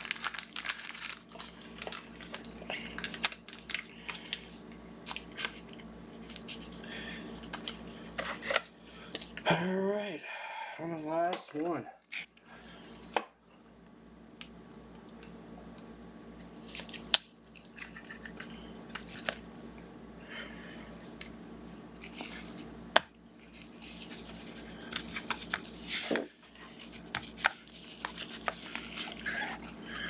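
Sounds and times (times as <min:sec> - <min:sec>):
wrapper rustling and crinkling: 0:00.0 - 0:09.1, 0:21.9 - 0:22.7, 0:23.4 - 0:30.0
steady low hum: 0:00.0 - 0:30.0.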